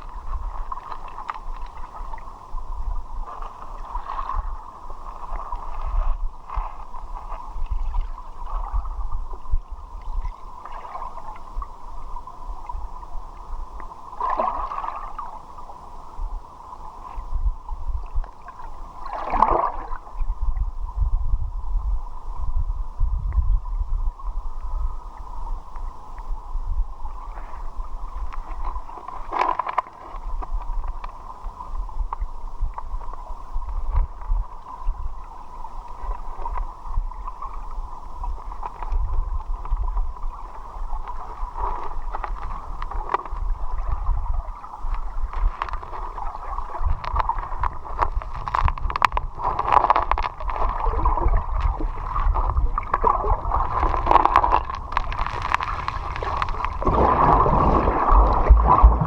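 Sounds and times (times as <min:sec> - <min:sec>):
river water sloshing and gurgling: 0:00.0 - 0:20.7, 0:26.1 - 0:59.0
low rumble: 0:52.6 - 0:59.0.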